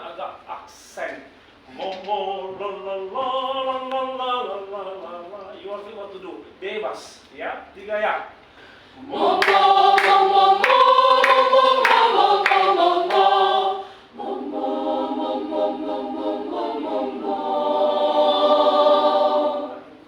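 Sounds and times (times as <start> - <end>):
choir singing unaccompanied: 9.0 - 20.0.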